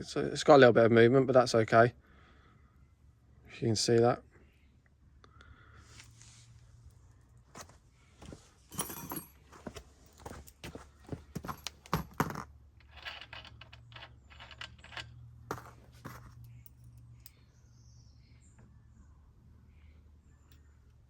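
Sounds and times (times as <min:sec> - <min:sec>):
faint low hum: 0:02.0 - 0:21.0
small metal parts clinking: 0:08.2 - 0:17.4.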